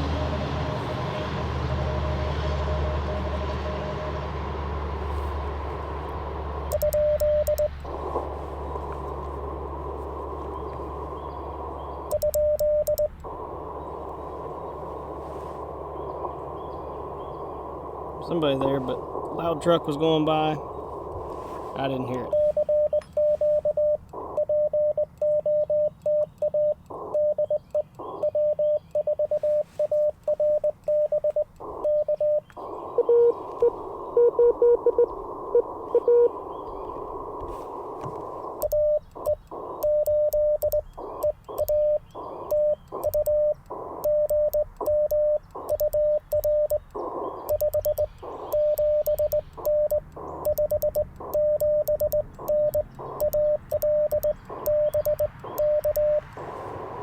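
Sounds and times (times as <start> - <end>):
radio band hiss: 5.0 - 24.6, 29.3 - 30.7, 31.6 - 57.0
faint lower-pitched morse signal: 5.1 - 57.0
morse code tone keyed: 6.7 - 8.4, 12.0 - 13.4, 21.8 - 36.3, 38.4 - 56.8.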